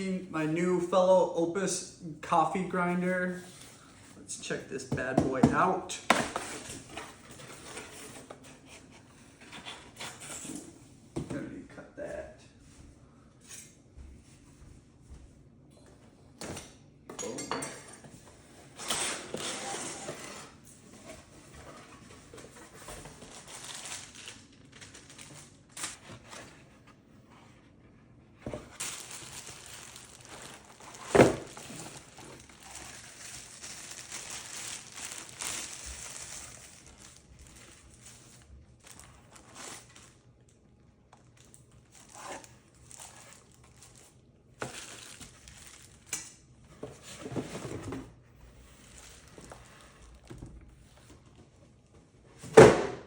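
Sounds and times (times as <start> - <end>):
wrapping crinkling and rustling: 18.9 - 27.8, 28.5 - 51.4.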